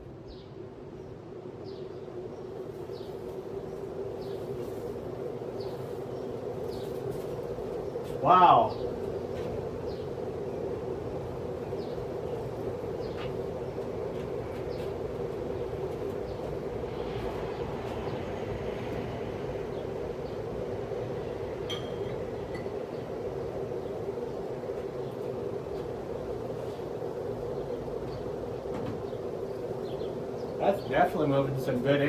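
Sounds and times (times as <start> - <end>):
ceiling fan running: 0.0 - 32.0.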